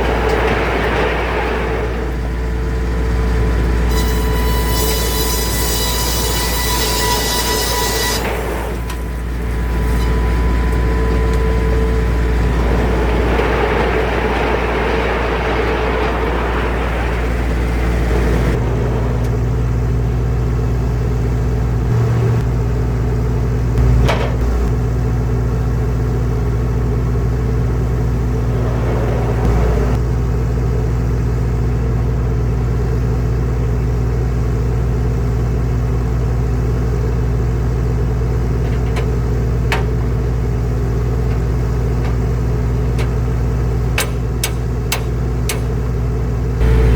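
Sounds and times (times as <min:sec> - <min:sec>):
sawmill engine running: 0:00.0 - 0:46.9
saw blade cutting wood: 0:03.9 - 0:09.2.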